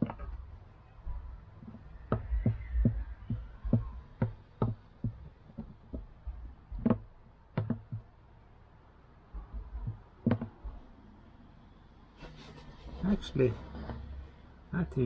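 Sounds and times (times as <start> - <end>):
objects knocking on hard surface: 0.0 - 0.4, 1.6 - 6.1, 6.7 - 8.1, 9.4 - 10.8.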